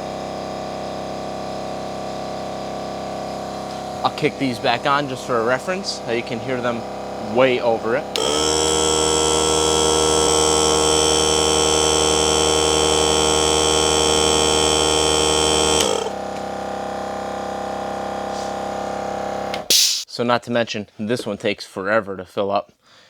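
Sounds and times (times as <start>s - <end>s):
air compressors buzzing drone: 3.7s - 9.3s.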